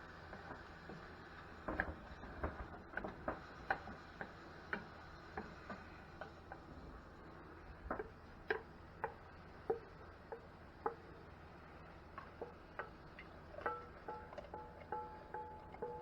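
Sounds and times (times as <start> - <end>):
faint steady hum: 0.0 - 16.0
light ticks with ringing note: 8.0 - 11.3, 12.1 - 16.0.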